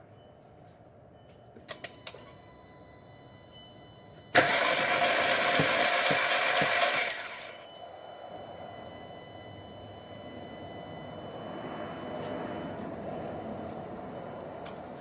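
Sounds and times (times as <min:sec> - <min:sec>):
engine cranked by starter: 0:04.3 - 0:07.6.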